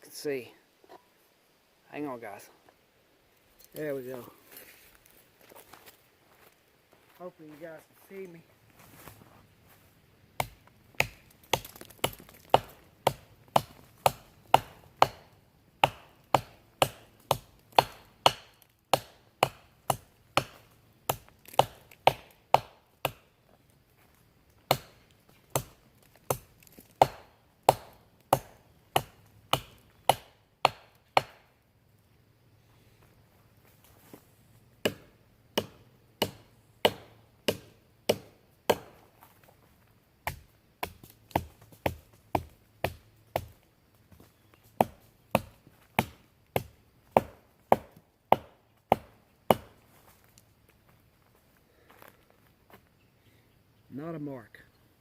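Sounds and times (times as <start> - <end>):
blade chopping into wooden log: 26.3 - 31.4, 34.8 - 39.0.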